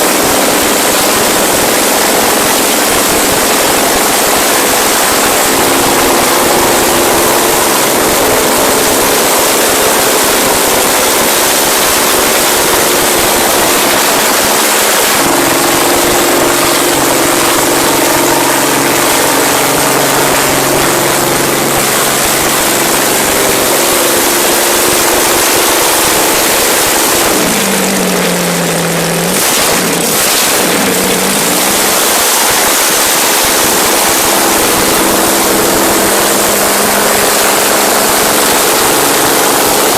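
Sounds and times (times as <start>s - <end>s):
large engine running loudly: 0.0s - 39.9s.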